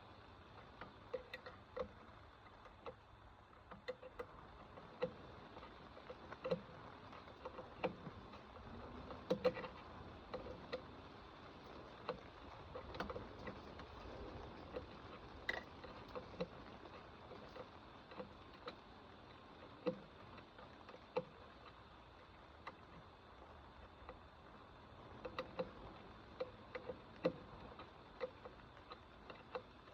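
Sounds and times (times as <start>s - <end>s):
wrench clicks and taps: 3.7s - 4.3s.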